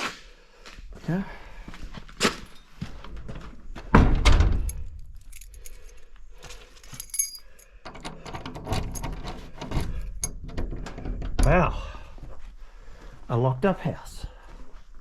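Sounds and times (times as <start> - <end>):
keys jangling: 2.4 - 2.7, 4.6 - 10.5
clicks and knocks: 6.9 - 11.6.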